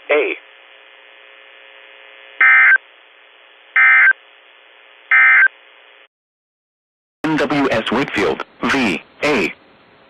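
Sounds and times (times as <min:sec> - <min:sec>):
faint steady hum: 0:07.3 - 0:10.0.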